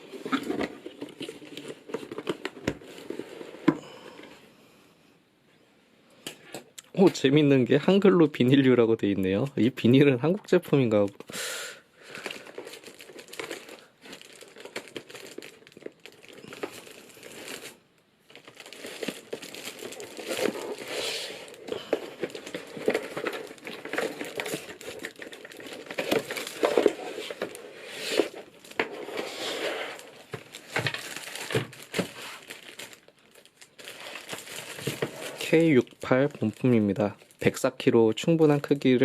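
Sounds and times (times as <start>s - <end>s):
plastic bag crinkling: 12.0s - 37.8s.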